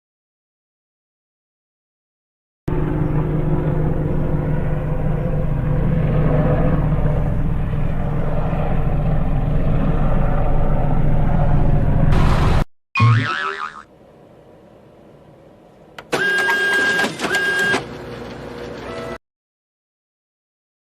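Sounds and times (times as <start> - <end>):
vehicle engine rumble: 2.7 - 12.7.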